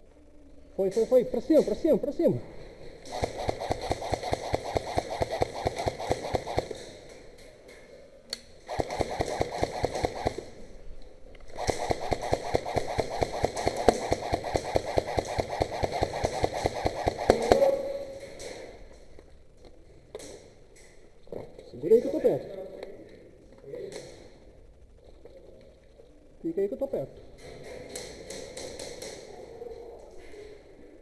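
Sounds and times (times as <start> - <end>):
airsoft gun full-auto bursts: 3.0 - 7.1, 8.7 - 10.7, 11.5 - 17.9.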